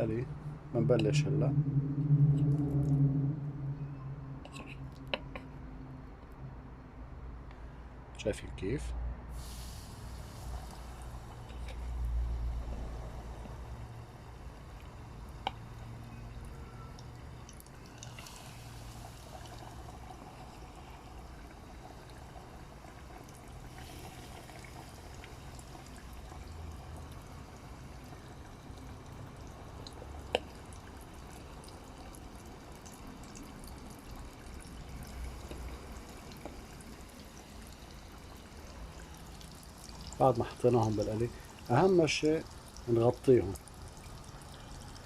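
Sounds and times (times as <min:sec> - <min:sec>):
chicken wings deep-frying in oil: 0:09.4 - 0:45.0.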